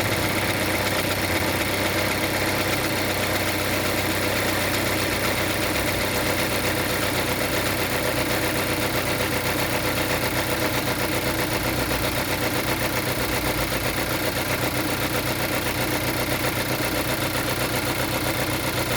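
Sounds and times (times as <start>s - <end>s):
car engine idling: 0.0s - 18.9s.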